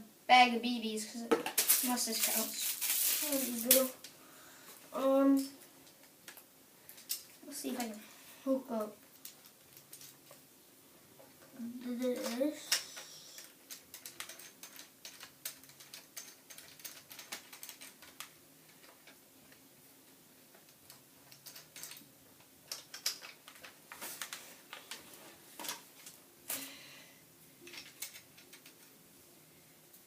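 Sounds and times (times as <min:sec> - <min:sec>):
plastic parts clicking and rattling: 0:01.4 - 0:03.9, 0:05.8 - 0:08.0, 0:09.1 - 0:10.4, 0:12.1 - 0:19.6, 0:20.5 - 0:26.6, 0:27.6 - 0:29.0.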